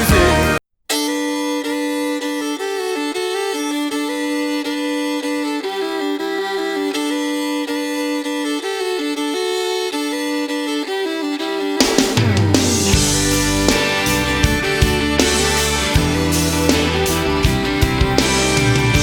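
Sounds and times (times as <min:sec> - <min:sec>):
accompanying chords: 0:00.0 - 0:00.6, 0:11.8 - 0:19.0
fiddle playing slow melody: 0:00.0 - 0:19.0.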